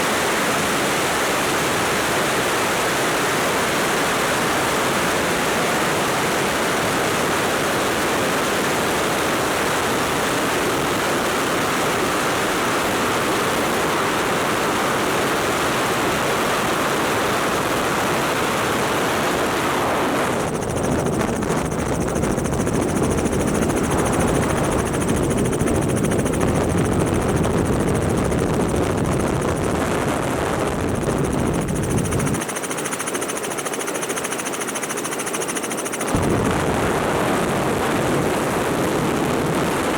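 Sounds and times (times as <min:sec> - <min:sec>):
helicopter rotor and engine: 0:00.0 - 0:39.9
heavy wind rush: 0:17.6 - 0:39.9.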